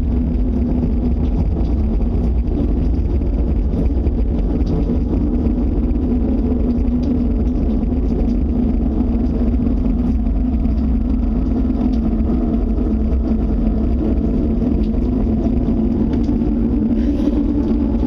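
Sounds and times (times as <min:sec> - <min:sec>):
held hum: 0:00.0 - 0:18.0
low rumbling drone: 0:00.0 - 0:18.0.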